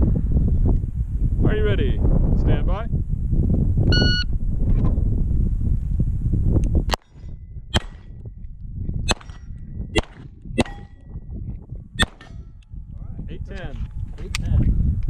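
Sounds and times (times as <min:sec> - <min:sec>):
pistol shots: 0:07.8 - 0:08.1, 0:09.1 - 0:11.0, 0:12.0 - 0:12.4
steel target ringing: 0:09.1 - 0:11.0.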